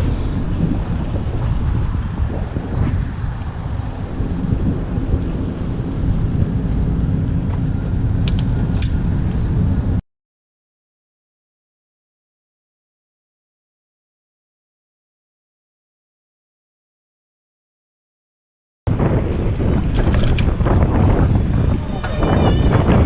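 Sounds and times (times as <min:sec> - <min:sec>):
street traffic noise: 0:00.0 - 0:10.0, 0:19.0 - 0:23.0
wind rumble on microphone: 0:00.0 - 0:10.0, 0:18.9 - 0:23.0.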